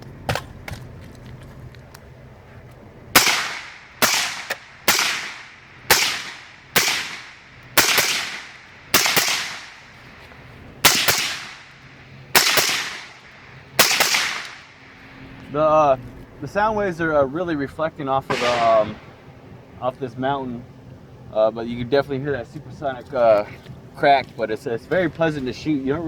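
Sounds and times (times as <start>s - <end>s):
suppressed rifle shots with echo: 3.1s - 10.1s, 10.8s - 15.3s, 18.3s - 19.8s.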